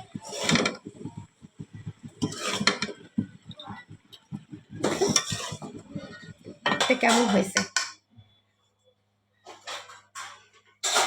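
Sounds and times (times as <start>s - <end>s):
cookware scraping clatter: 0.0s - 1.2s, 2.1s - 3.4s, 4.4s - 8.0s, 9.5s - 11.0s
metal utensils clinking: 4.8s - 8.0s, 9.6s - 11.0s.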